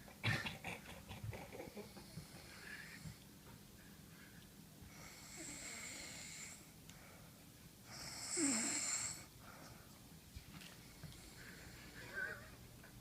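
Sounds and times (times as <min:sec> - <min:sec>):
woman snoring: 0:05.0 - 0:06.6, 0:07.9 - 0:09.3.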